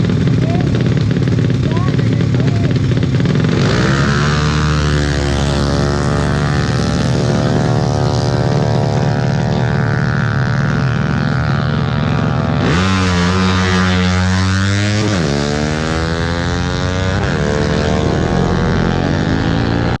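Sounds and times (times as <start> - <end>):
multi-tone horns: 5.0 - 20.0.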